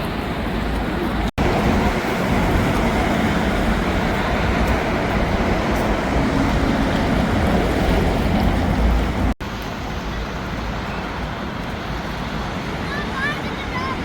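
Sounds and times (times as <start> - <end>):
low traffic rumble: 0.0 - 14.0
road noise hiss: 0.0 - 14.0.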